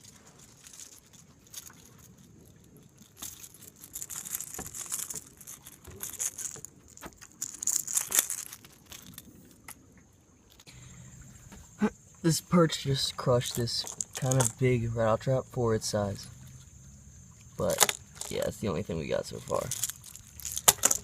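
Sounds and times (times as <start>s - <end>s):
fishing lure rattling and clicking: 0.0s - 9.8s, 13.4s - 14.8s, 17.6s - 21.0s.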